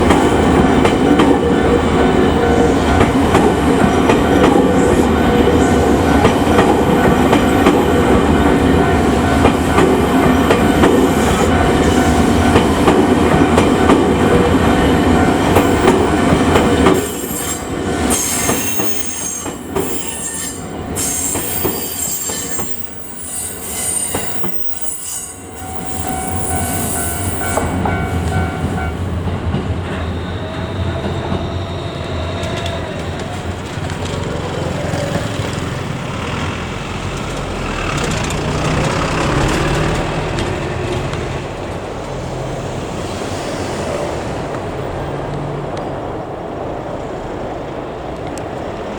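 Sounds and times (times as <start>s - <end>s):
level crossing warning tone: 0.0s - 16.6s, 24.1s - 33.2s
train wheels clacking and squealing: 0.0s - 41.8s.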